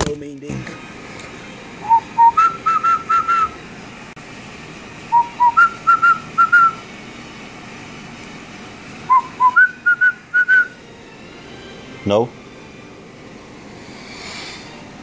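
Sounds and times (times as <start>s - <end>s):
person whistling a tune: 1.8s - 3.6s, 5.1s - 6.8s, 9.1s - 10.8s.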